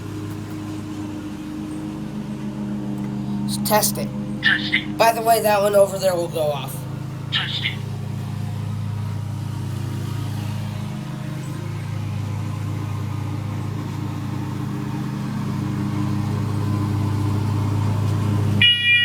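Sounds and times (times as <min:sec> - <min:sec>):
steady low hum: 0:00.0 - 0:18.5
smoke alarm beep: 0:18.6 - 0:19.0.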